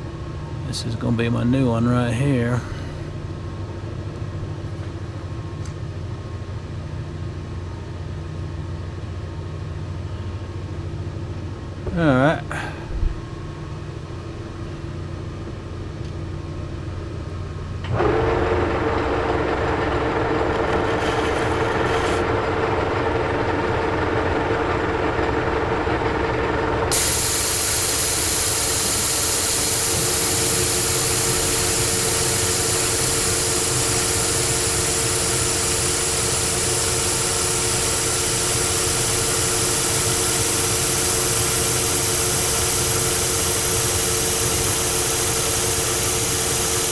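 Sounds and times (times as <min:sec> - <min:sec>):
steady whine: 0:11.4 - 0:46.9
lathe running: 0:17.9 - 0:46.9
loud even hiss: 0:26.9 - 0:46.9.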